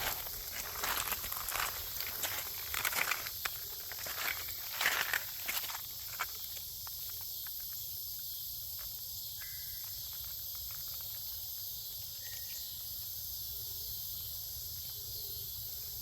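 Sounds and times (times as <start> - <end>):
insects chorus: 0.0 - 16.0.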